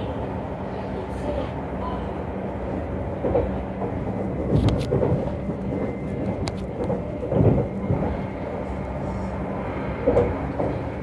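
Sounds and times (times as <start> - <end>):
electric train rumbling: 0.0 - 11.0
heavy train thumps: 3.2 - 8.7, 10.0 - 11.0.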